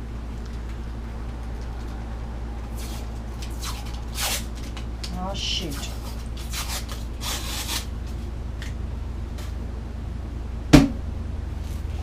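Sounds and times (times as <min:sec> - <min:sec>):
steady low hum: 0:00.0 - 0:12.0
sharp knock: 0:10.8 - 0:11.0.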